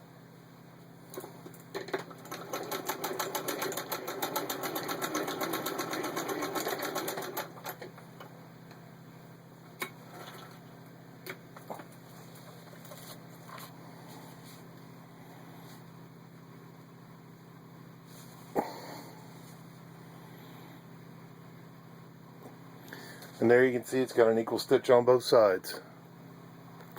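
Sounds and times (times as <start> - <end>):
sewing machine stitching: 1.2 - 8.0.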